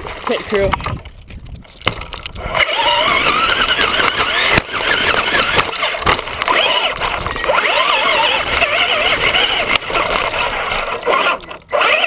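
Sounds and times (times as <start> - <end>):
rc car motor whining: 2.4 - 12.0.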